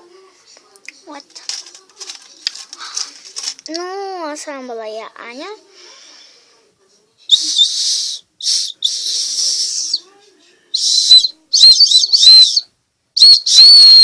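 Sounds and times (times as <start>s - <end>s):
girl whistling high notes: 10.8s - 12.6s, 13.2s - 14.0s.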